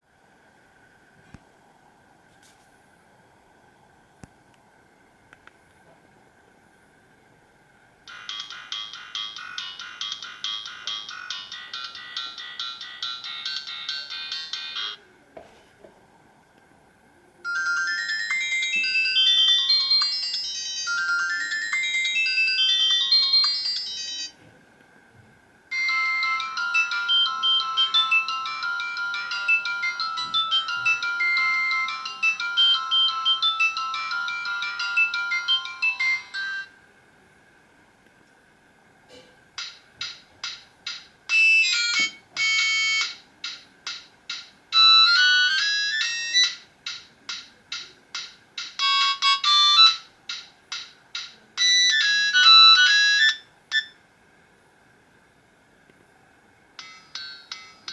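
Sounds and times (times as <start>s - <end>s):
tinny ringtone melodies: 8.1s - 15.1s, 17.4s - 24.4s, 25.7s - 36.8s, 39.1s - 54.0s, 56.8s - 57.9s.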